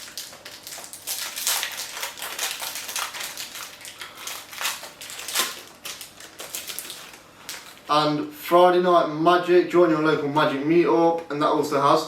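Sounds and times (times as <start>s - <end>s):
foil wrapper crinkling: 0.0s - 7.9s.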